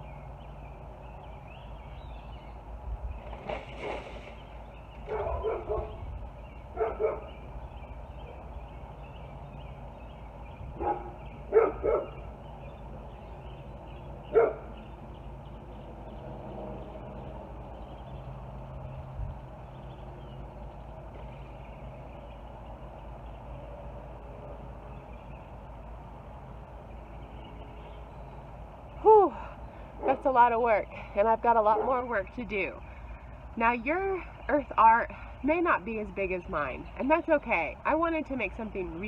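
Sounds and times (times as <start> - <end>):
dog barking: 5.1 - 6.0, 6.8 - 7.3, 10.8 - 12.2, 14.3 - 14.7.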